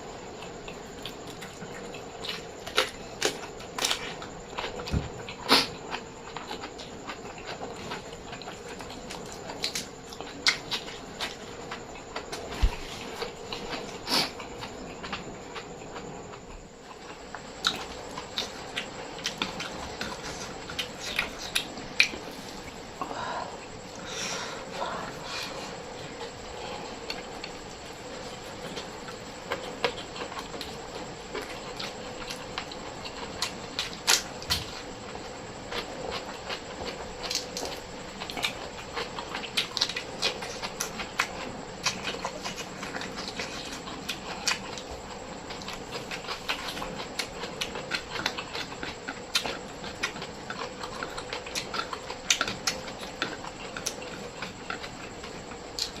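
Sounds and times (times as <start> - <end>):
crunchy chewing: 0.0 - 56.0
faint steady hum: 0.0 - 56.0.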